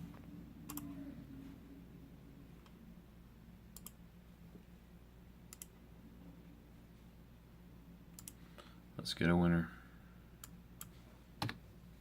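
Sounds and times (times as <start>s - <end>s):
low steady hum: 0.0s - 12.0s
computer mouse clicks: 0.6s - 0.9s, 3.7s - 4.0s, 5.5s - 5.7s, 8.1s - 8.4s.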